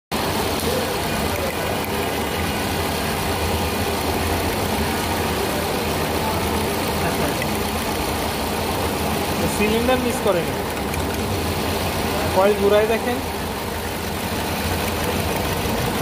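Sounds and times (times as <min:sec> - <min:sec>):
car engine idling: 0:00.1 - 0:16.0.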